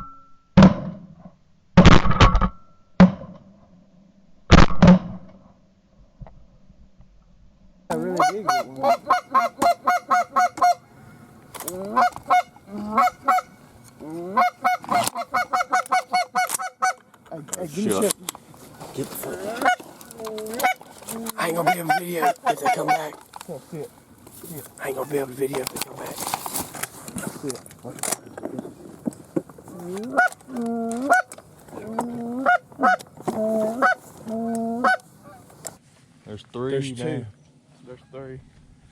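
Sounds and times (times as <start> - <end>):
geese honking: 7.9 - 17.1, 18.6 - 23.3, 29.6 - 35.6.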